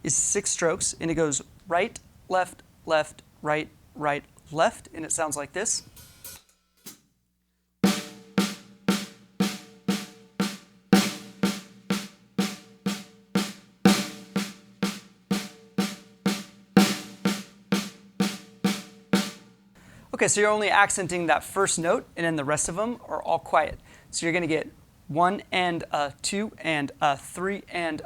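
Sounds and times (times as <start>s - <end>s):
snare drum roll: 7.9s - 19.5s.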